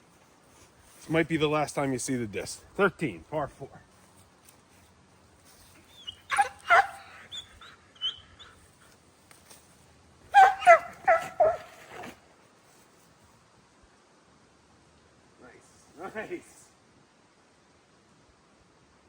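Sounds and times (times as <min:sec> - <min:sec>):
dog whimpering and yipping: 0:05.8 - 0:08.6, 0:10.4 - 0:12.0.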